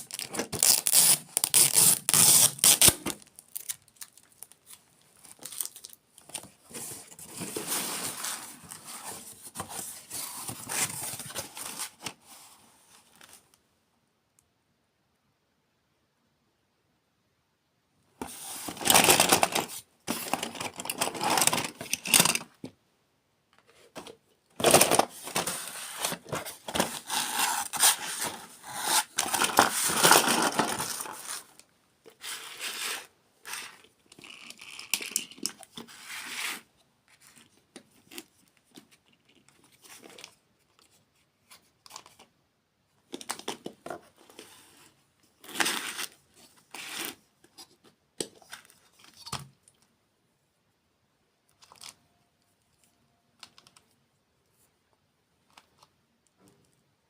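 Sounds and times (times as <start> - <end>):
packaging tearing and crinkling: 0.0 - 6.0, 24.6 - 31.5.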